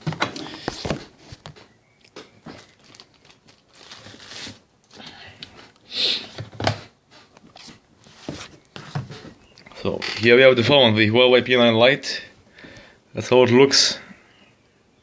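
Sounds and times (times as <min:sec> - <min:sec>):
packaging rustling and crinkling: 0:00.0 - 0:01.6, 0:02.2 - 0:05.7.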